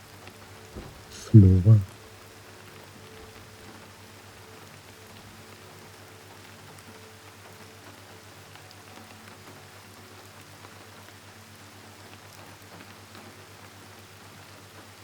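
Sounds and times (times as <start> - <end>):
low steady hum: 0.0 - 9.0
gentle rain: 0.0 - 15.0
drops pattering: 0.7 - 1.9.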